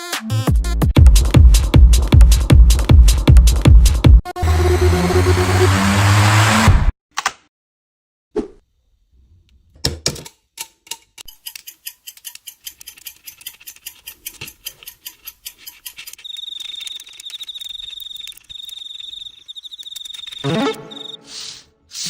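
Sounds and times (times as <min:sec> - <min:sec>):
rapid mechanical clicking: 0:11.3 - 0:20.4
high wavering beep: 0:16.3 - 0:21.3.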